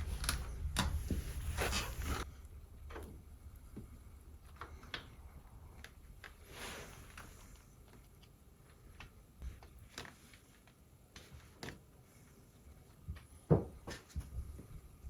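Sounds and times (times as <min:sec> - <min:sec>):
low hum: 0:00.0 - 0:07.8.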